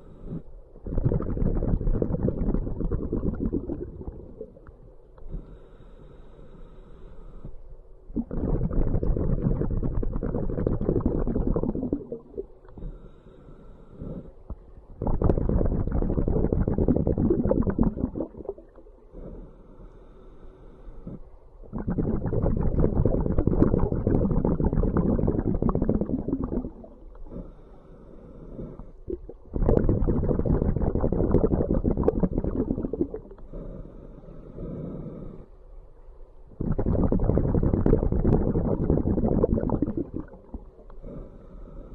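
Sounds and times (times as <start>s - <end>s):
hissing regulator inhale: 0.0s - 0.6s, 5.2s - 7.8s, 12.7s - 14.6s, 19.1s - 21.3s, 24.3s - 29.2s, 32.6s - 35.7s, 38.2s - 41.9s
bubbling exhale underwater: 0.8s - 4.8s, 8.1s - 12.7s, 14.5s - 18.8s, 21.6s - 27.4s, 29.0s - 33.5s, 36.6s - 40.9s.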